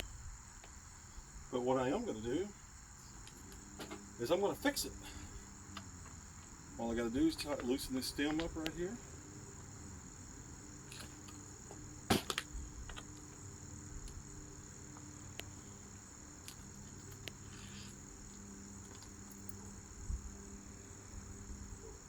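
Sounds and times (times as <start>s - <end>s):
insects chirring: 0.0s - 22.0s.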